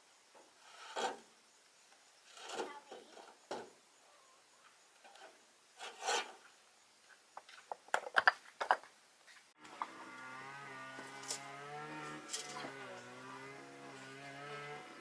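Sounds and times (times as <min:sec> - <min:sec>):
light knocks and scrapes: 0:02.3 - 0:03.7.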